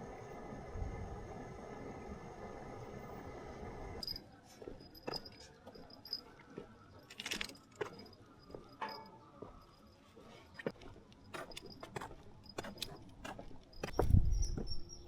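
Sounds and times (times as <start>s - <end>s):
insects chirping: 4.0s - 15.0s
handling clicks and rustles: 4.1s - 9.2s.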